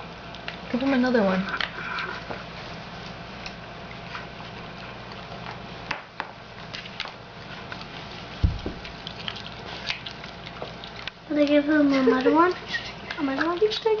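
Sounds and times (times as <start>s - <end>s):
dog chewing with crunches: 0.0s - 14.0s
low thump: 8.4s - 8.8s.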